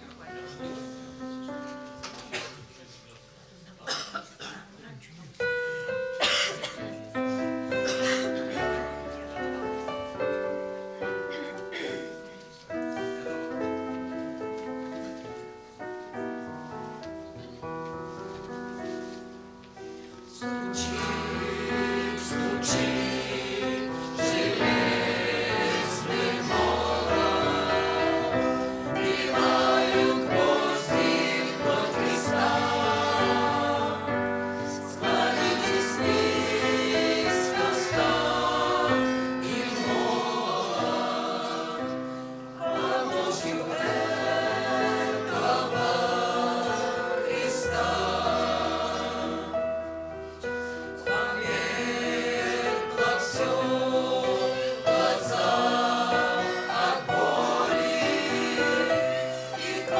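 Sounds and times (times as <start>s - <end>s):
choir singing a hymn: 6.2s - 11.9s, 18.4s - 59.9s
instrumental accompaniment: 6.9s - 59.9s.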